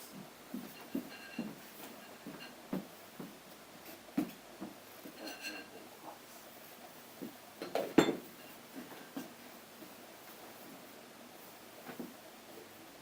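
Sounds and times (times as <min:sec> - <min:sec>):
faint ringing clink: 0:00.6 - 0:02.6, 0:05.2 - 0:05.8, 0:07.6 - 0:08.6.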